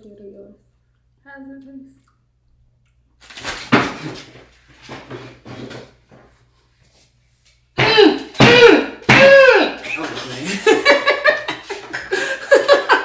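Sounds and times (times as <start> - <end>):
soft eating noises: 0.0 - 3.2.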